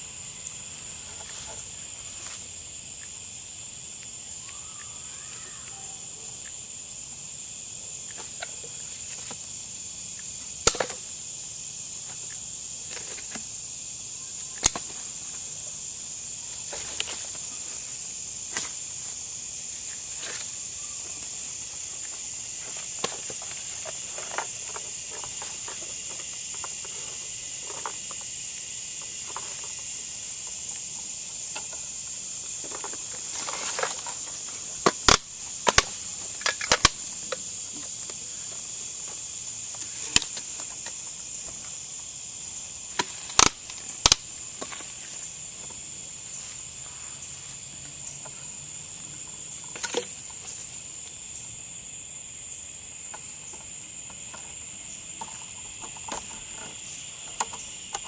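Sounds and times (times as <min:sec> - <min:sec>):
insect trilling: 0:00.0 - 0:58.0
sharp loud clicks: 0:34.8 - 0:37.1, 0:43.0 - 0:44.3.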